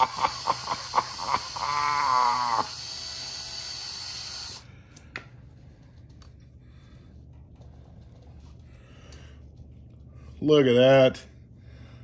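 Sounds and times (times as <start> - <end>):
electric drill whining: 0.0 - 4.7.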